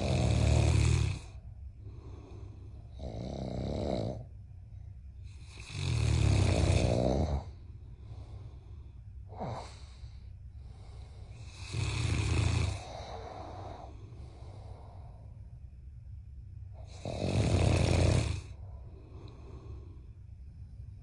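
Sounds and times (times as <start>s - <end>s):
heavy rattling snoring: 0.0s - 4.3s, 5.3s - 8.6s, 9.3s - 10.0s, 10.8s - 14.7s, 16.8s - 19.9s.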